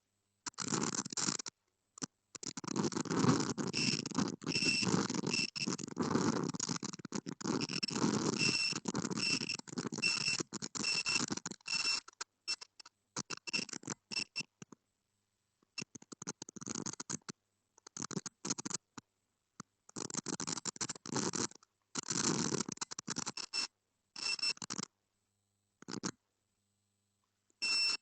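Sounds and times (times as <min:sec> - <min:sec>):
high electronic beep: 0:03.8 - 0:05.7, 0:07.6 - 0:12.7, 0:27.6 - 0:28.0.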